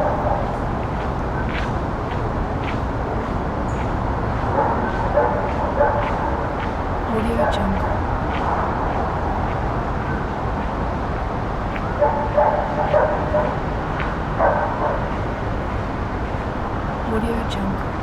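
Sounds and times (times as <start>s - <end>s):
distant city hum: 0.0s - 18.0s
dog barking: 4.4s - 6.7s, 11.9s - 13.7s, 14.3s - 15.2s.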